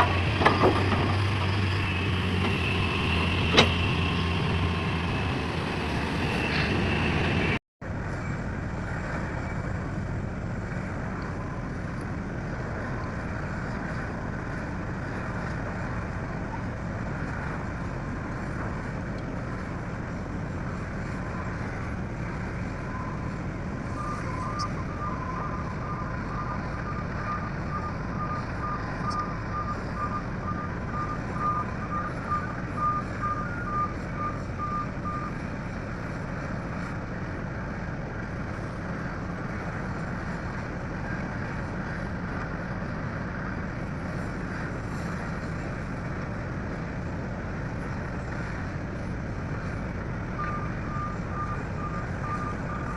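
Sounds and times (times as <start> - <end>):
heavy diesel machinery: 0.0 - 52.9
reversing alarm beeping: 23.9 - 35.4, 50.3 - 52.9.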